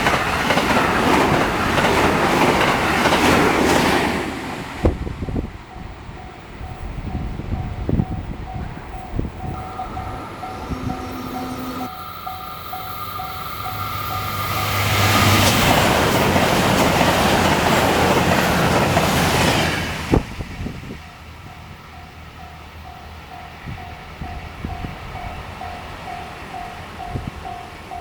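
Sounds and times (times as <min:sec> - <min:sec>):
train passing clickety-clack: 0:00.0 - 0:28.0
level-crossing bell dinging: 0:05.7 - 0:15.8.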